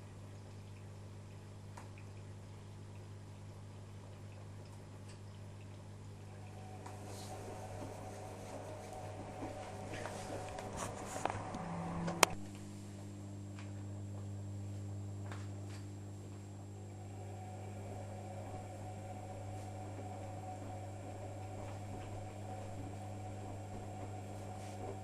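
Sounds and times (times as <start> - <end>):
washing machine humming: 0.0 - 25.0.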